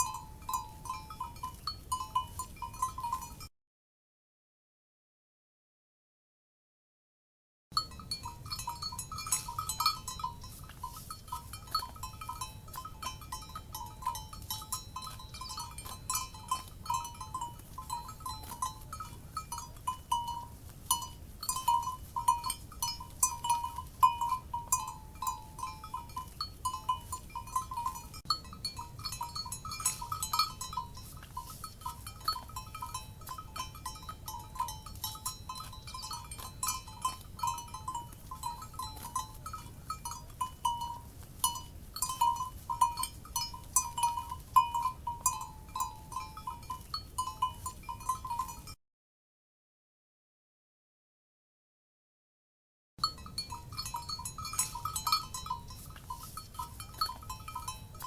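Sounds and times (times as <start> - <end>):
cowbells clanking: 0.0 - 3.5, 7.8 - 48.8, 53.0 - 58.0
low steady rumble: 7.8 - 48.6.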